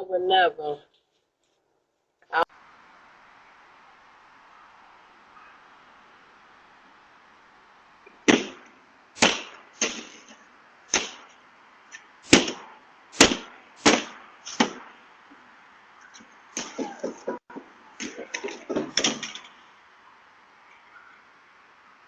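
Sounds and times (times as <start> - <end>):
loud sharp bangs: 8.1 - 15.2, 16.5 - 19.6.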